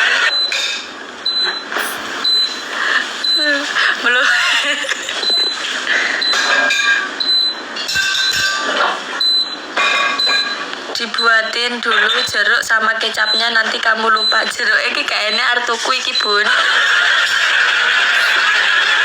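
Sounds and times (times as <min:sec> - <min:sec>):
steady background hiss: 0:00.1 - 0:06.2
person speaking: 0:01.8 - 0:02.2, 0:18.2 - 0:18.4.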